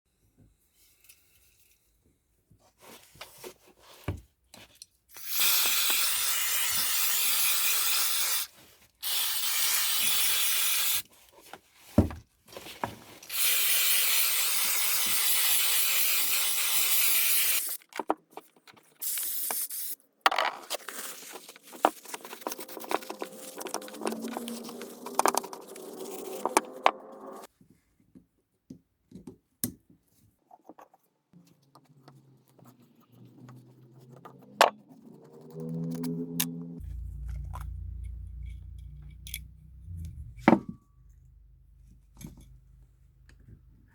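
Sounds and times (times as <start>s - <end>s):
aerosol can spraying: 5.2s - 11.0s, 13.3s - 17.7s.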